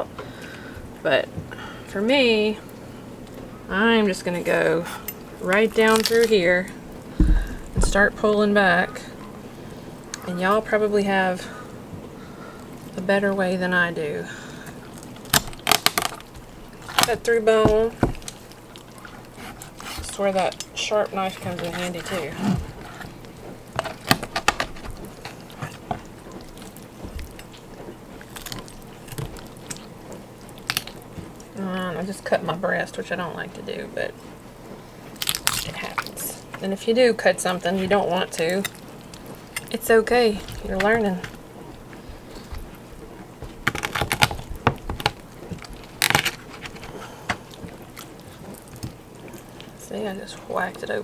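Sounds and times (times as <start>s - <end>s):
knife crunching through chicken bone: 5.4s - 7.8s, 14.7s - 20.7s, 21.3s - 31.4s, 35.1s - 36.2s, 37.8s - 49.8s
knife cutting chicken bones: 43.4s - 45.2s.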